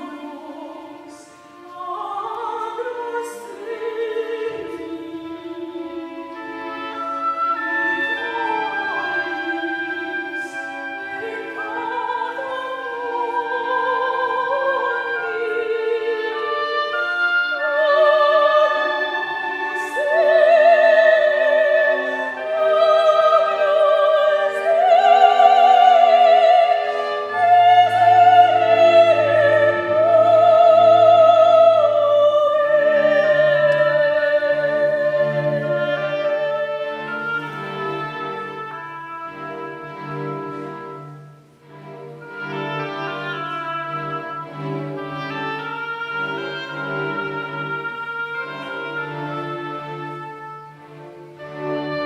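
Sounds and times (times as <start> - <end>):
operatic voice singing with vibrato: 0.0 - 38.5
chamber orchestra: 0.0 - 52.0.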